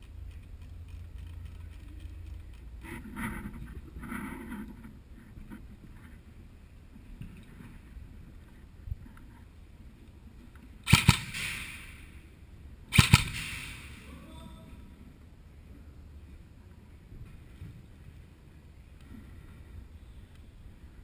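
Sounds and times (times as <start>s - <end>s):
airsoft gun sharp cracks: 10.8s - 12.2s, 12.9s - 14.1s.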